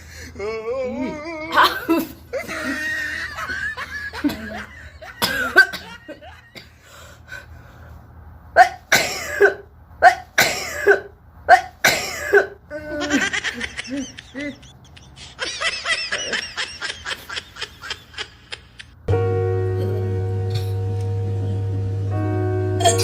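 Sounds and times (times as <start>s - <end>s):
person coughing and sneezing: 1.6s - 2.5s, 4.2s - 6.8s, 8.6s - 12.6s, 22.8s - 23.0s
laughter: 1.6s - 6.6s, 12.9s - 19.0s.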